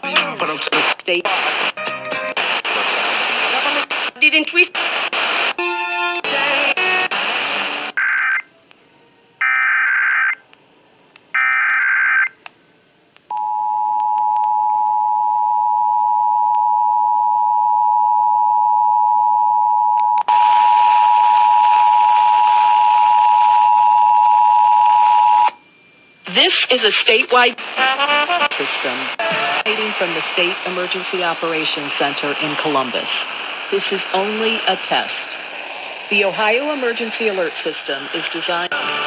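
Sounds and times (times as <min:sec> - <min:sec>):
buzzy data-burst screeches: 0:27.7 - 0:39.0.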